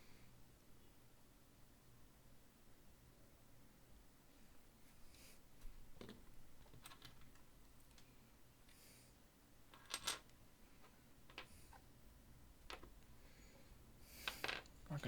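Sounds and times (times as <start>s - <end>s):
small objects clicking and tapping: 9.7s - 11.8s, 12.6s - 13.0s, 14.2s - 14.8s.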